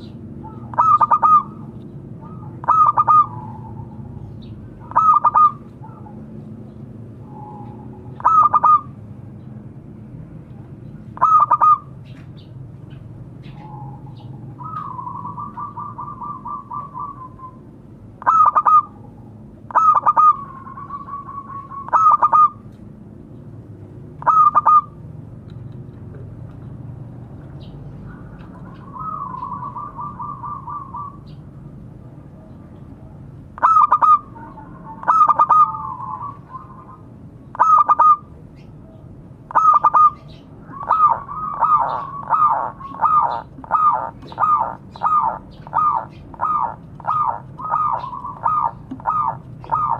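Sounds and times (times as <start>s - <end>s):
low steady background hum: 0.0s - 49.9s
dove cooing: 0.4s - 6.4s, 7.2s - 9.0s, 11.2s - 12.0s, 13.4s - 17.6s, 18.2s - 22.7s, 24.2s - 25.0s, 28.0s - 31.4s, 33.0s - 38.3s, 39.5s - 49.9s.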